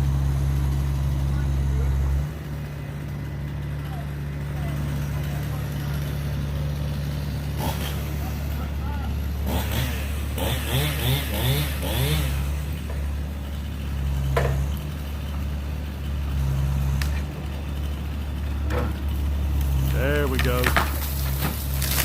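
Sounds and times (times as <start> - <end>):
heavy machine engine revving: 0.0 - 22.0
wood cracking: 18.3 - 22.0.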